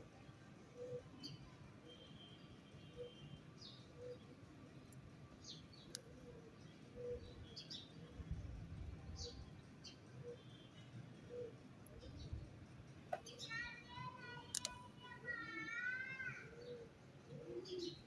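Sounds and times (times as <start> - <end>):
birds chirping: 9.1 - 18.0
sharp click: 14.5 - 14.8.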